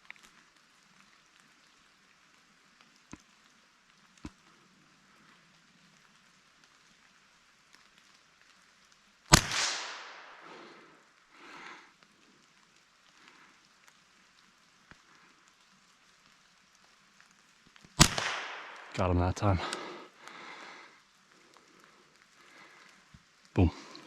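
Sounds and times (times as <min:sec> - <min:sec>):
faint ticks: 0:00.0 - 0:09.1, 0:11.0 - 0:18.0, 0:19.6 - 0:24.0
rifle shot with echo: 0:09.3 - 0:10.7, 0:18.0 - 0:19.9.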